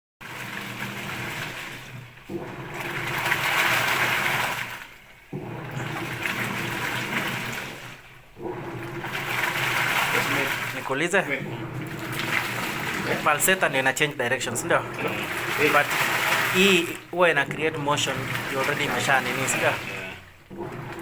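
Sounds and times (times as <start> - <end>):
washing machine motor hum: 0.2 - 21.0
water sloshing: 0.3 - 21.0.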